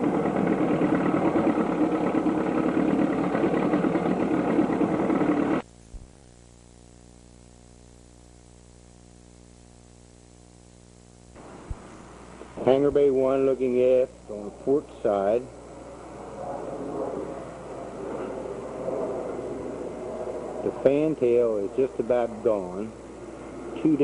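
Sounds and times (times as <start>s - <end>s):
boat engine idling: 0.0s - 5.6s
faint electrical hum: 0.0s - 24.0s.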